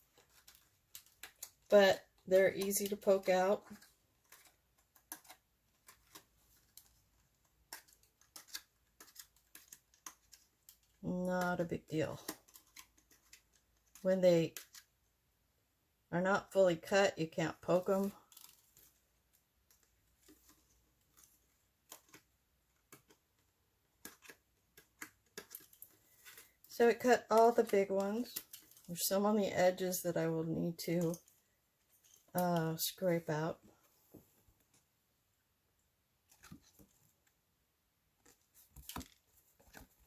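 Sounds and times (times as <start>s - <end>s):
paper crackling: 0.0s - 14.9s
faint irregular clicks: 3.7s - 11.0s, 12.2s - 15.0s.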